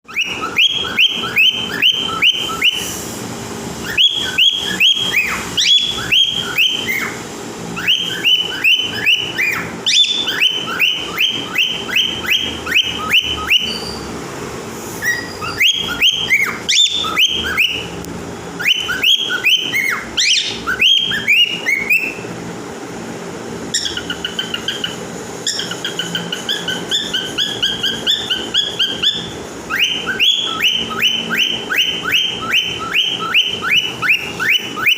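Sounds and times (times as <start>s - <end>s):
pet animal squeaking: 7.8s - 14.1s, 23.7s - 34.9s.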